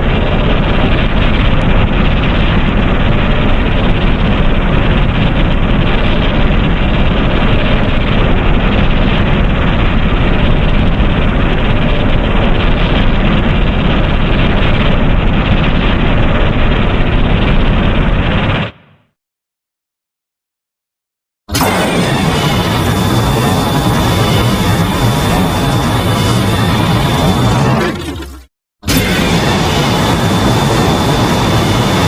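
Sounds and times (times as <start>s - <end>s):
loud low monster rumbling: 21.5s - 32.0s.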